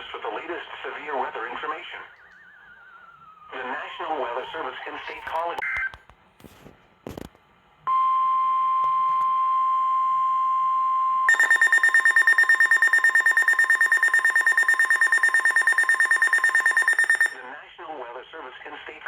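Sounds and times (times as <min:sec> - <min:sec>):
steady high alarm tone: 0:09.7 - 0:17.4
rapidly pulsing alarm: 0:10.8 - 0:17.4.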